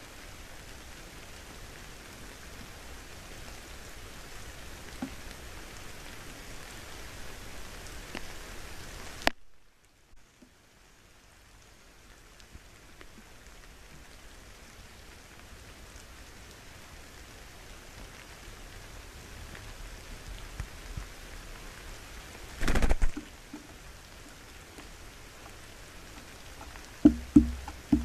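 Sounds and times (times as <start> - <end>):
rain hissing: 0.0 - 28.0
quick loud taps: 27.0 - 28.0.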